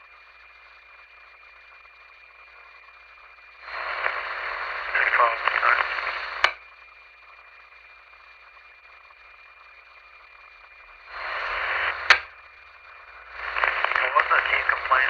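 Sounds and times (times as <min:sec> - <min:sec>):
faint radio hiss and whine: 0:00.0 - 0:15.0
radio static burst: 0:03.6 - 0:06.6, 0:10.8 - 0:15.0
radio squelch click: 0:03.7 - 0:06.6, 0:11.1 - 0:12.4, 0:13.0 - 0:15.0.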